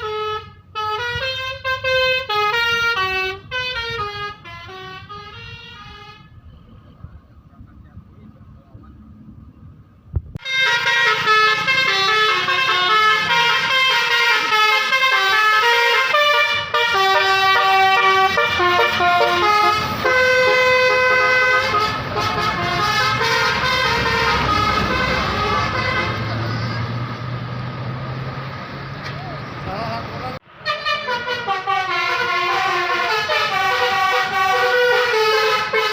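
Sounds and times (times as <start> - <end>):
musical horn melody: 0.0 - 6.4, 10.4 - 26.8, 30.6 - 35.9
engine and traffic noise: 0.0 - 35.9.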